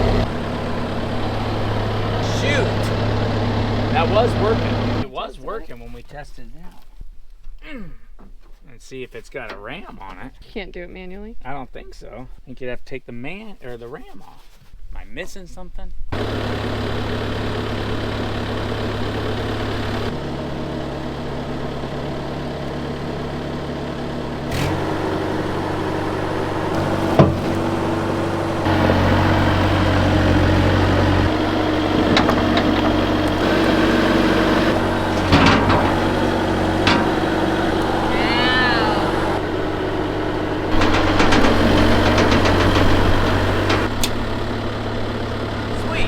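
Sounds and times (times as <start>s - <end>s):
diesel engine running: 0.0s - 5.1s, 16.1s - 46.0s
sharp clunks: 24.7s - 38.2s, 40.7s - 44.5s.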